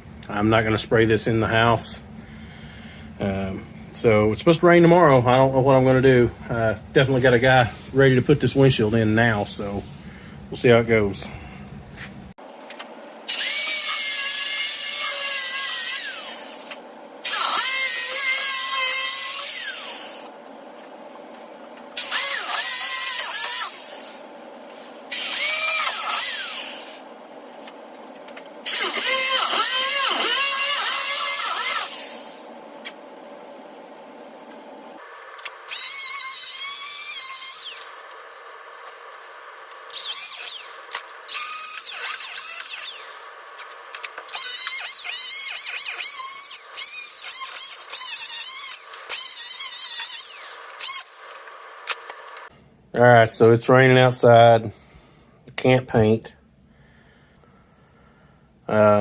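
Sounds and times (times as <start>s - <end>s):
power tool whining: 13.3s - 20.3s, 22.0s - 24.3s, 25.1s - 27.1s, 28.6s - 32.5s, 35.0s - 52.5s.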